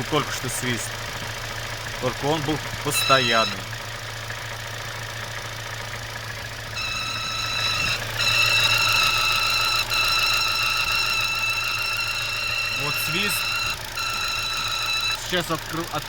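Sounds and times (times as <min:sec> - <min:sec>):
car engine idling: 0:00.0 - 0:16.0
high-pitched whistle: 0:02.9 - 0:03.6, 0:06.8 - 0:15.2.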